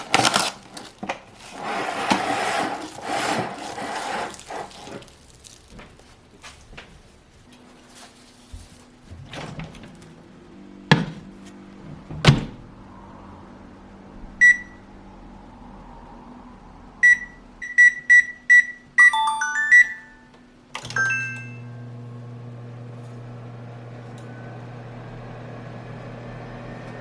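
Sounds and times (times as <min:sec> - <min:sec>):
microwave button beeps: 0:14.4 - 0:14.8, 0:17.0 - 0:20.2, 0:20.8 - 0:22.0
microwave chime notes: 0:14.4 - 0:14.8, 0:17.0 - 0:25.2.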